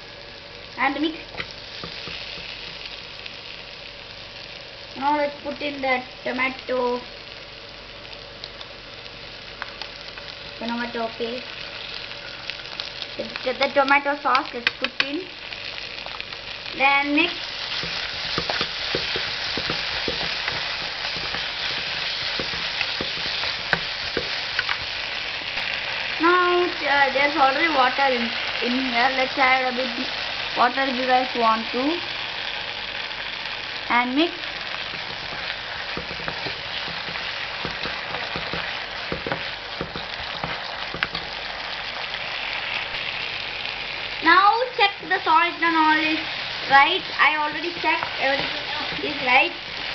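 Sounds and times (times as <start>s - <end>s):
vegetables sizzling in a hot pan: 0.0s - 49.9s
spoon knocking against pan: 17.8s - 24.8s, 34.9s - 41.3s.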